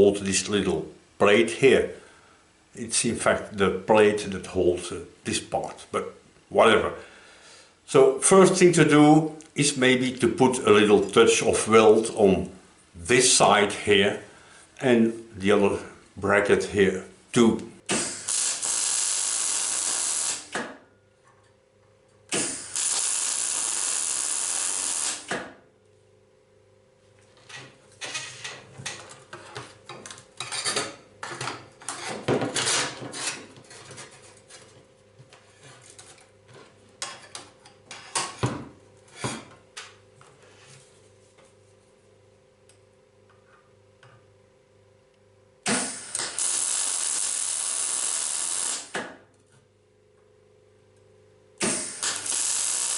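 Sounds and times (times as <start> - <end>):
arc welding crackling hiss: 17.9 - 20.6, 22.3 - 25.4, 45.7 - 49.0, 51.6 - 52.9.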